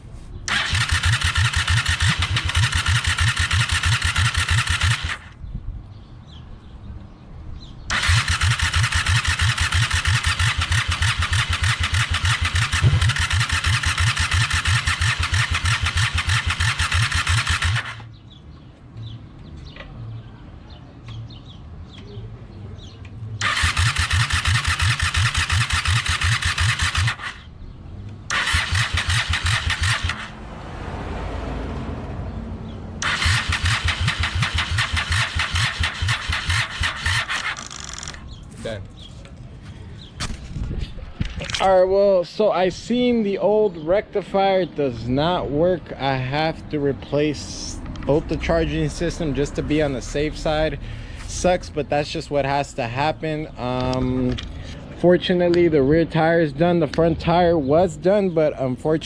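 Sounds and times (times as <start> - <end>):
electric starter cranking engine: 0.5 - 5.4, 7.9 - 18.1, 23.4 - 27.5, 28.3 - 30.4, 33.0 - 38.2.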